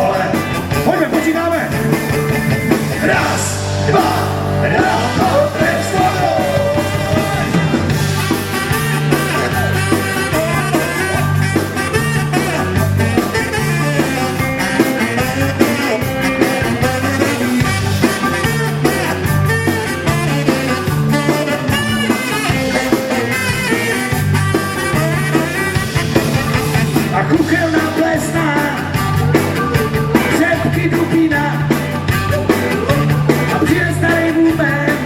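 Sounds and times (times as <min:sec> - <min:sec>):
live rock band playing: 0:00.0 - 0:35.0.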